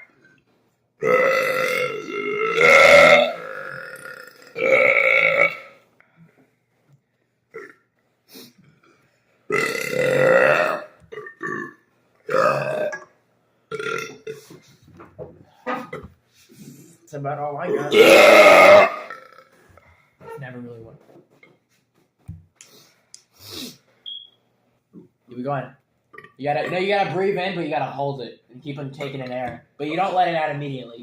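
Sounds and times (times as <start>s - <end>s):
man burping loudly: 1.0s - 5.8s, 7.5s - 7.8s, 9.5s - 13.1s, 13.7s - 14.4s, 17.7s - 19.6s, 26.1s - 27.0s.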